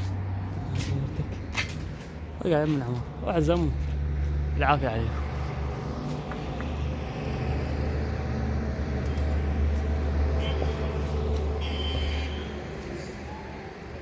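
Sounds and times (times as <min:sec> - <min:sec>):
passing vehicle engine rumble: 0:00.0 - 0:14.0.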